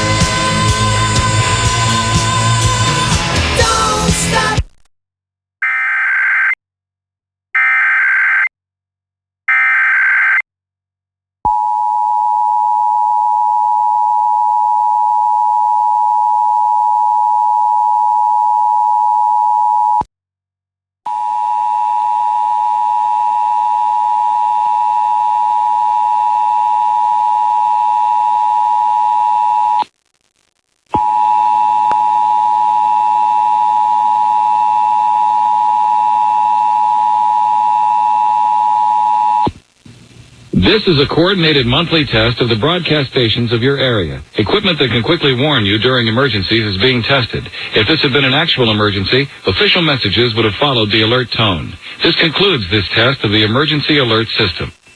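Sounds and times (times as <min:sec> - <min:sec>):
faint hum: 0:31.0 - 0:54.9.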